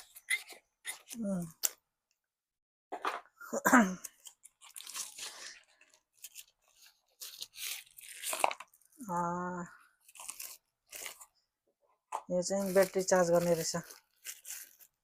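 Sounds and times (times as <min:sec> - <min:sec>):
tape and plastic wrap tearing: 0:04.0 - 0:09.1, 0:10.0 - 0:11.3, 0:12.6 - 0:15.0.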